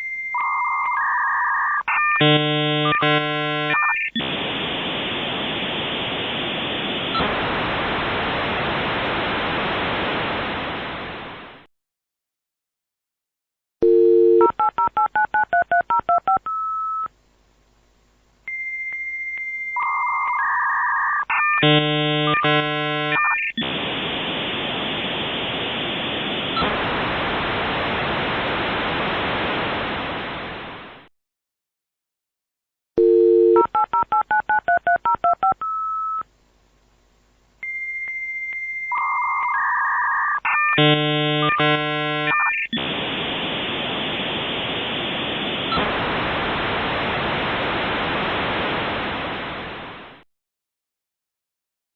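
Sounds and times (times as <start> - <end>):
modem harsh hiss: 2.2 - 11.7, 21.6 - 31.1, 40.8 - 50.2
touch-tone dialing beeps: 13.8 - 17.1, 33.0 - 36.2
modem high steady tone: 21.6 - 26.7, 40.8 - 45.9.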